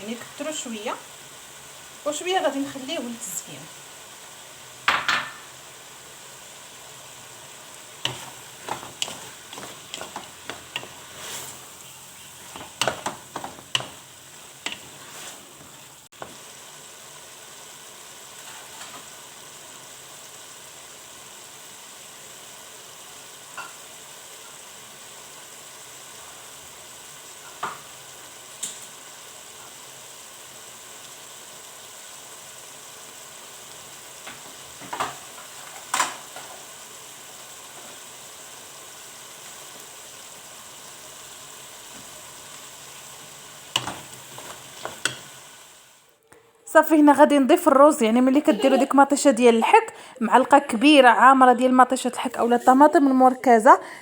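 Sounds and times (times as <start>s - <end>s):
food sizzling in a pan: 0.0s - 54.0s
spoon knocking and scraping pan: 4.8s - 5.6s, 7.9s - 16.4s, 43.7s - 45.3s.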